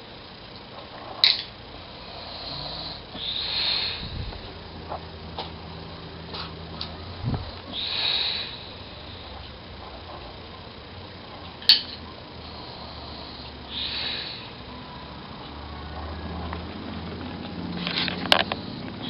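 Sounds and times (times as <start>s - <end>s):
man snoring softly: 2.0s - 4.5s, 7.3s - 9.4s, 12.4s - 14.7s.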